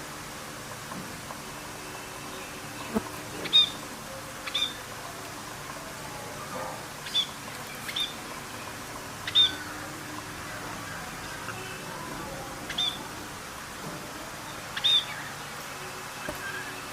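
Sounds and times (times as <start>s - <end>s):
parrot chirping: 12.7s - 13.0s.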